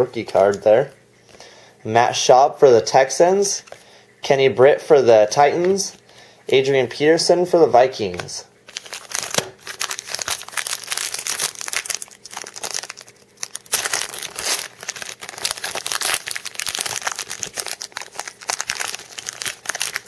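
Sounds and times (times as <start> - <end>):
wrapper tearing and crinkling: 8.7 - 20.0.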